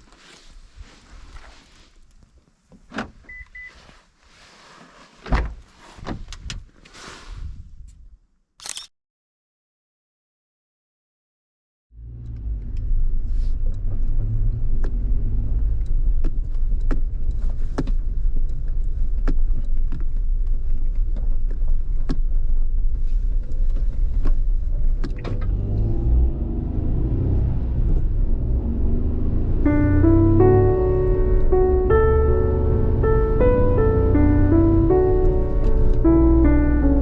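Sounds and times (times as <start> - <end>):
engine and tyres rumbling: 12.0 - 37.0
piano music: 29.1 - 37.0.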